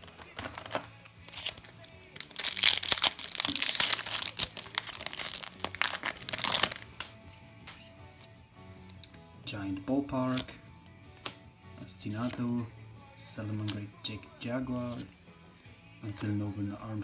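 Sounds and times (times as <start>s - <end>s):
wrapper crinkling and tearing: 0.0s - 7.8s.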